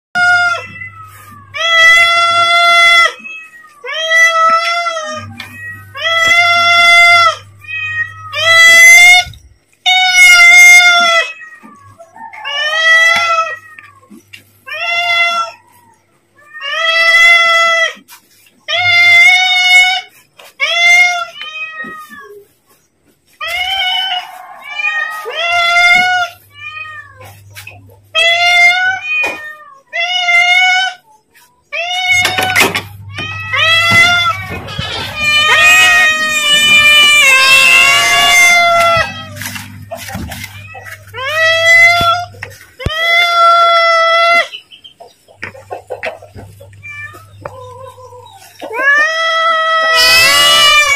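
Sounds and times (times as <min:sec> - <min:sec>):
cat meowing: 0:00.2 - 0:18.0, 0:31.7 - 0:44.5, 0:46.4 - 0:50.9.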